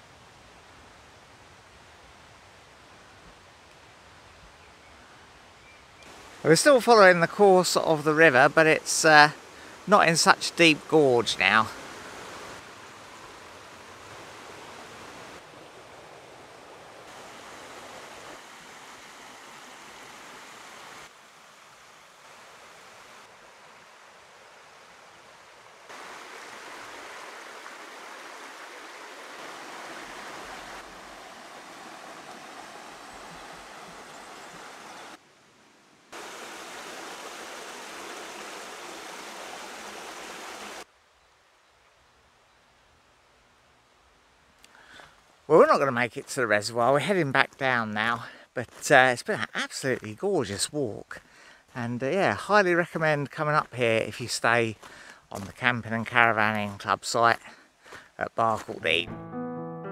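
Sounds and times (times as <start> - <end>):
river rushing over rocks: 6.1 - 35.2, 36.1 - 40.9.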